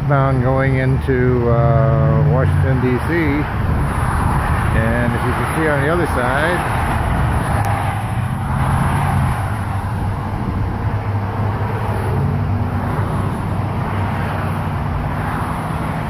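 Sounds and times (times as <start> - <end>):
hum of car and truck engines: 0.0 - 16.0
rush of tyres: 3.4 - 16.0.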